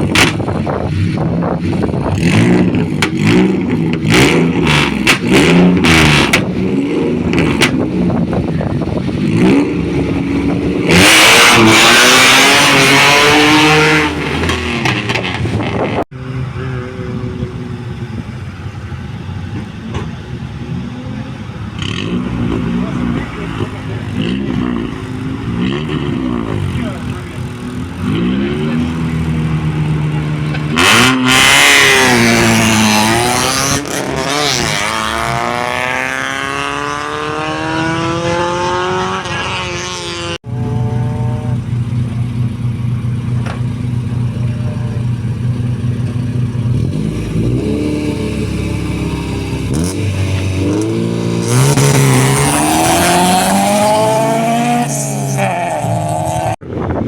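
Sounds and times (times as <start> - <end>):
rally car engine revving: 0.0 - 57.0
car accelerating away: 1.5 - 56.6
car engine idling: 16.2 - 28.0, 40.4 - 53.4.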